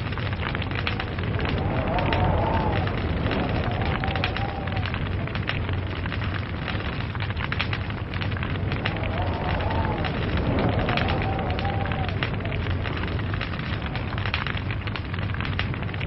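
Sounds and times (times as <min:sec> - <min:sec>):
log fire crackling and popping: 0:00.0 - 0:16.0.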